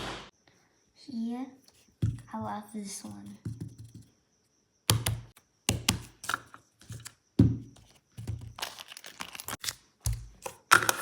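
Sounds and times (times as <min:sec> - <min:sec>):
crinkling and rustling of toys: 0:07.8 - 0:11.0.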